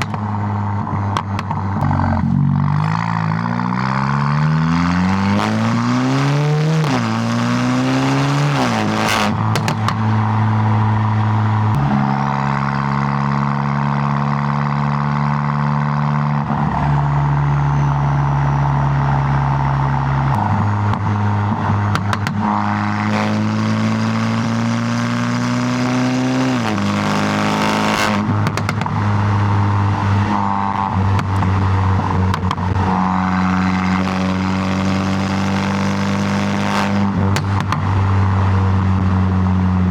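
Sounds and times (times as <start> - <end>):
sharp clicks: 0.0 - 0.4, 9.3 - 10.2, 21.9 - 22.5, 28.2 - 29.2, 37.2 - 38.0
car engine accelerating and shifting: 0.0 - 39.9.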